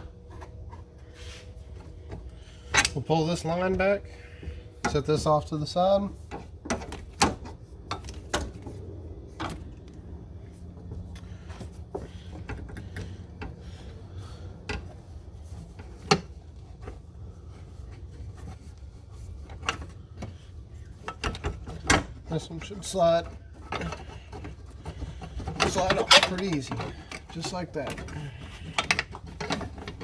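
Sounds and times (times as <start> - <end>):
steady low rumble: 0.0 - 21.0
hand tools and metal parts clicking: 0.0 - 30.0.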